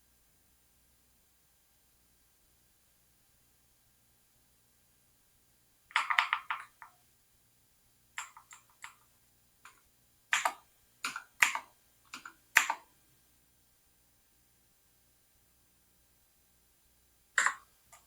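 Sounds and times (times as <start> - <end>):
computer keyboard keypresses: 5.9 - 6.9, 8.2 - 12.9, 17.4 - 18.0.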